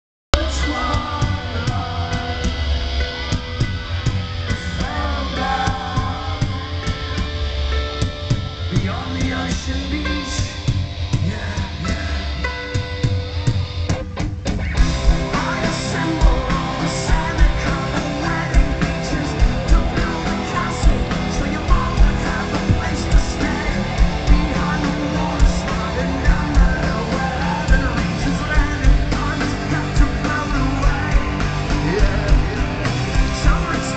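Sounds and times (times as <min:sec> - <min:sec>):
loud rock music with singing: 0:00.3 - 0:33.9
heavy drum hits: 0:12.8 - 0:33.9.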